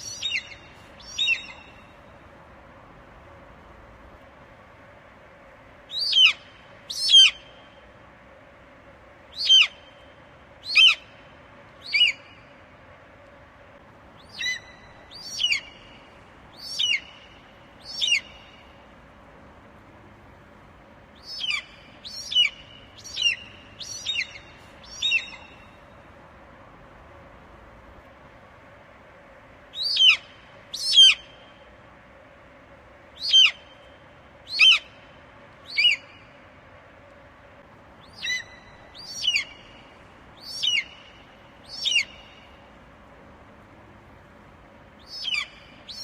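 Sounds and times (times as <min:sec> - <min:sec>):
eagle calling: 0:00.0 - 0:01.9, 0:10.6 - 0:11.1, 0:14.2 - 0:16.0, 0:16.6 - 0:18.6, 0:21.2 - 0:25.8, 0:29.8 - 0:31.4, 0:33.2 - 0:33.8, 0:34.5 - 0:35.0, 0:35.7 - 0:36.2, 0:38.0 - 0:42.5, 0:45.0 - 0:46.0.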